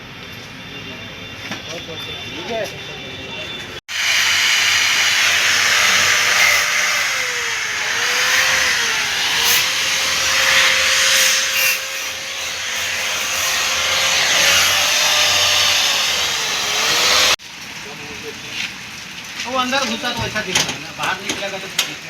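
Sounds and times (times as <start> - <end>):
electric power tool grinding: 3.9 - 17.4.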